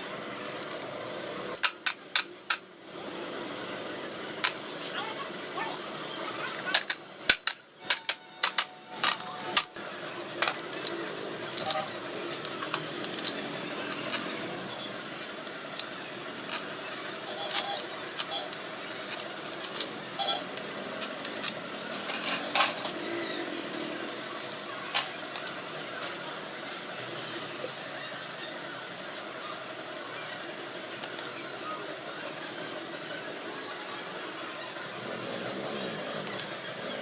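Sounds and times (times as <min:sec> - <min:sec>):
metal parts and tools clinking: 0:01.5 - 0:02.8, 0:05.8 - 0:26.2.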